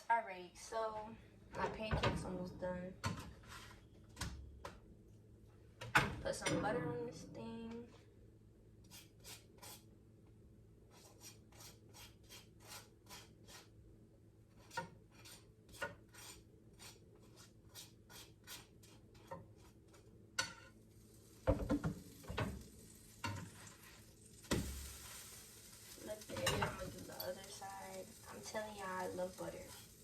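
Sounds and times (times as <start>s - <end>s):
knife spreading butter: 10.9s - 13.7s, 14.5s - 20.8s
pan sizzling: 14.6s - 30.0s.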